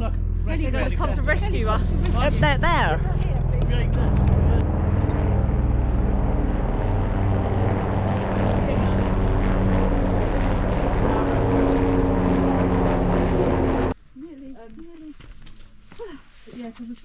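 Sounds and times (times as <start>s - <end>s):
helicopter rotor thrum: 1.3s - 14.0s.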